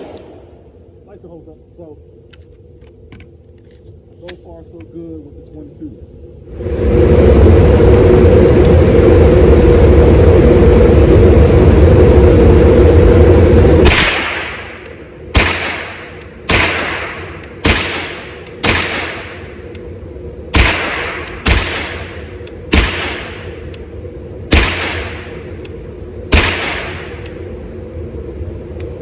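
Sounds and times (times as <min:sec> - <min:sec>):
loud steady rumbling: 0:00.0 - 0:29.0
rifle shots echoing: 0:13.9 - 0:14.7, 0:15.3 - 0:19.4, 0:20.5 - 0:23.5, 0:24.5 - 0:25.3, 0:26.3 - 0:27.2.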